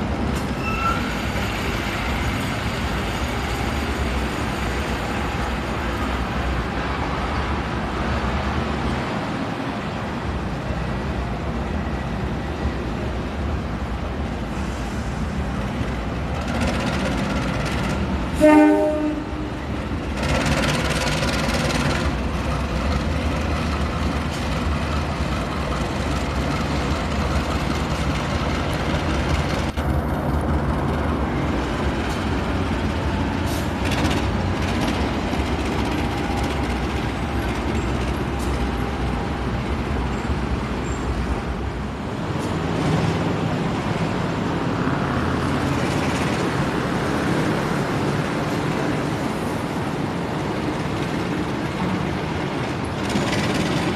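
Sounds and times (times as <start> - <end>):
freight train rumbling past: 0.0 - 53.9
train horn: 18.4 - 19.6.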